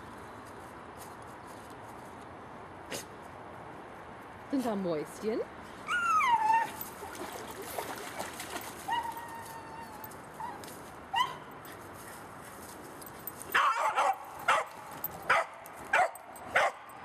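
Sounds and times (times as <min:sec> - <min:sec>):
dog whining: 0:05.9 - 0:06.8
dog barking: 0:13.6 - 0:14.7, 0:15.3 - 0:16.9.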